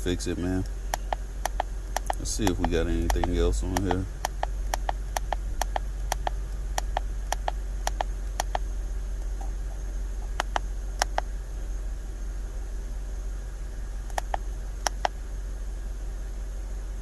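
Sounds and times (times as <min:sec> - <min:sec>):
low steady hum: 0:00.0 - 0:17.0
code reader button clicks: 0:00.9 - 0:08.6, 0:10.4 - 0:11.2, 0:14.1 - 0:15.1.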